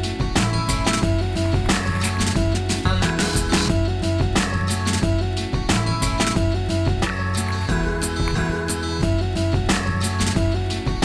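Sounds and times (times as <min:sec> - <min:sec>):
song with drums and beat: 0:00.0 - 0:11.0.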